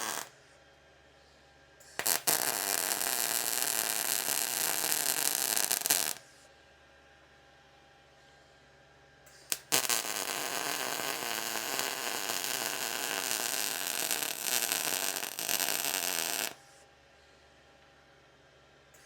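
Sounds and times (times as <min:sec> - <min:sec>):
arc welding crackling: 0:00.0 - 0:00.3, 0:02.0 - 0:06.2, 0:09.3 - 0:16.6.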